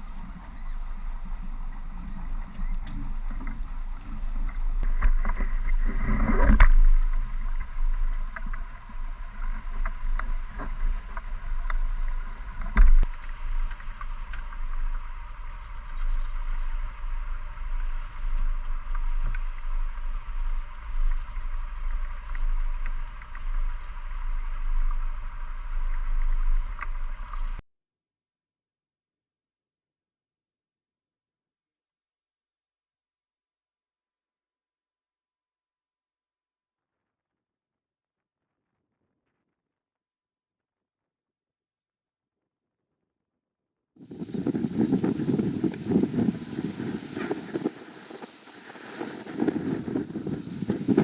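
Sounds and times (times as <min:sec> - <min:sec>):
water rushing along hull: 0:00.0 - 0:27.6, 0:44.0 - 0:51.0
wind buffeting microphone: 0:44.0 - 0:51.0.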